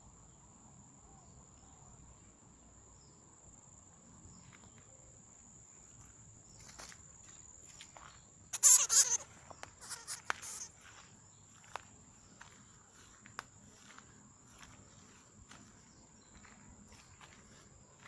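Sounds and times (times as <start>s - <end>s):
high-pitched insect trill: 3.0s - 18.0s
loud scratchy burst: 8.6s - 9.2s, 9.8s - 10.7s.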